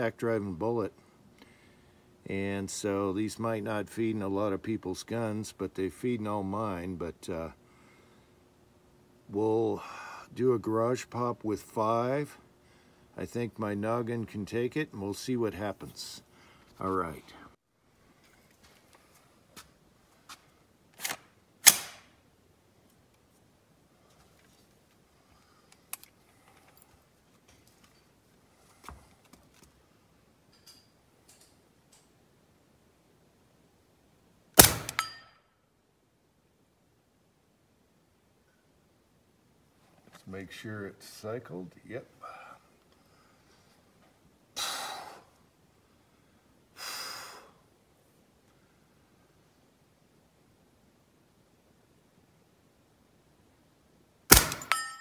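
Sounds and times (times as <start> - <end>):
man exhaling forcefully: 44.6 - 45.3, 46.8 - 47.6.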